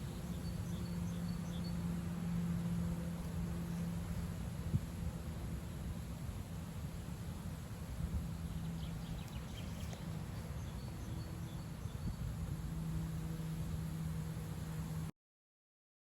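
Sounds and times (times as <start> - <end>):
low hum: 0.0 - 15.1
wind buffeting microphone: 2.4 - 15.1.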